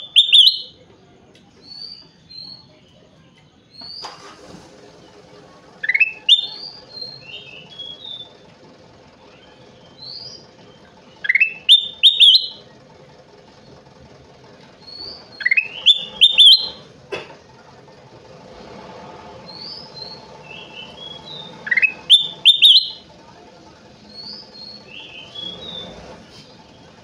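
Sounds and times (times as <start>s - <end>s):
bird singing whistles: 0.0s - 0.8s, 5.8s - 8.4s, 9.4s - 12.6s, 14.8s - 16.8s, 19.5s - 23.0s, 24.1s - 25.9s.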